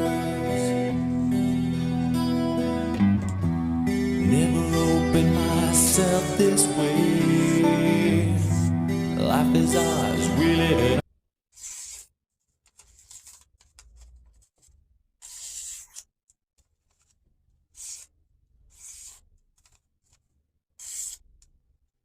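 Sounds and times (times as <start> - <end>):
knife blade scraping: 15.2 - 16.1, 17.8 - 18.1, 20.8 - 21.3.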